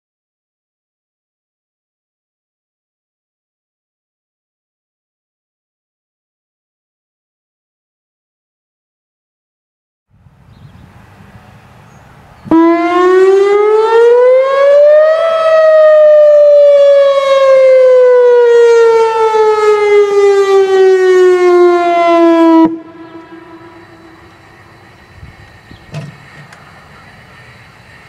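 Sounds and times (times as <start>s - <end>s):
warning siren wailing: 12.5s - 27.8s.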